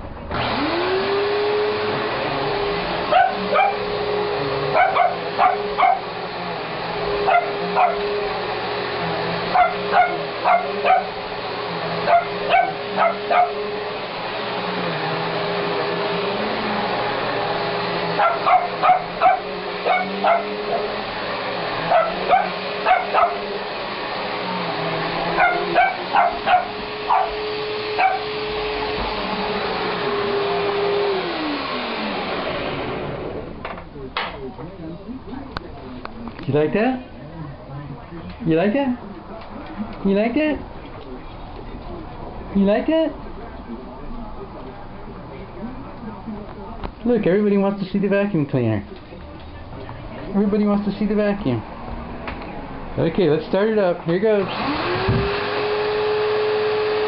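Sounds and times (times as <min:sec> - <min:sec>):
vacuum cleaner motor humming: 0:00.2 - 0:57.0
small dog barking: 0:03.1 - 0:03.9, 0:04.7 - 0:06.1, 0:07.2 - 0:08.2, 0:09.5 - 0:11.2, 0:12.0 - 0:13.7, 0:18.2 - 0:20.9, 0:21.9 - 0:23.5, 0:25.4 - 0:28.4.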